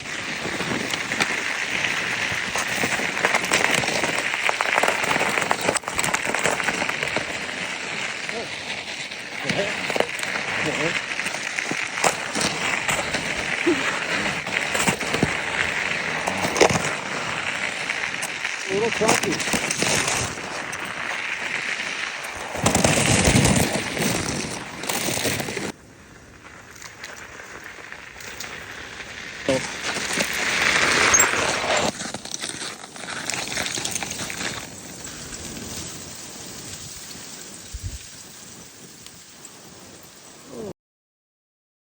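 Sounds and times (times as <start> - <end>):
studded tyres crackling on ice: 0.0 - 40.7
wind buffeting microphone: 37.6 - 38.1.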